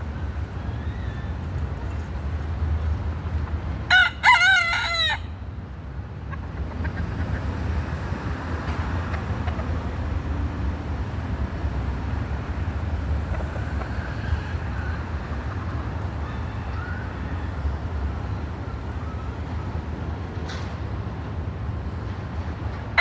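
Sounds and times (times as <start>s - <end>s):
rooster crowing: 3.9s - 5.4s.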